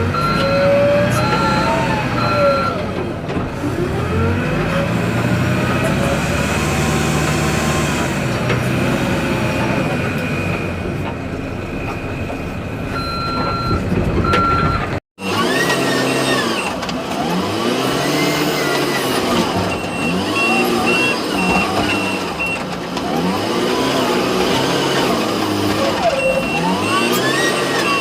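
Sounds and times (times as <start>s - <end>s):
diesel engine working under load: 0.0s - 28.0s
pulsing beep: 0.1s - 2.8s
short beeps: 0.1s - 2.8s.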